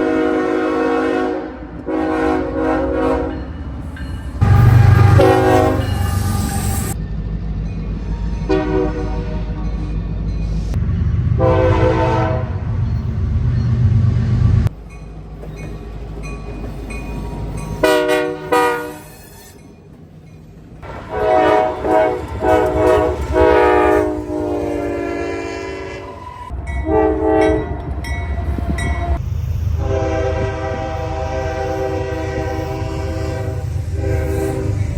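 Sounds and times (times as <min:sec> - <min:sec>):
locomotive air horn blasts: 0:00.0 - 0:03.4, 0:04.4 - 0:07.0, 0:08.5 - 0:09.6, 0:11.4 - 0:12.6, 0:17.8 - 0:19.2, 0:20.8 - 0:27.9, 0:28.6 - 0:34.9
low rumble of train: 0:00.0 - 0:34.9.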